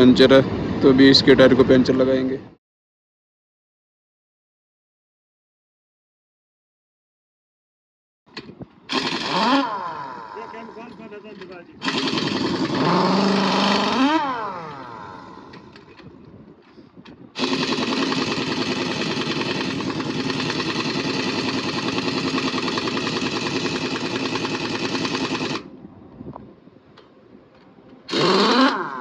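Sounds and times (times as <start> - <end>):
pneumatic impact wrench: 8.4 - 10.5, 11.3 - 16.1, 17.4 - 25.7, 28.1 - 29.0.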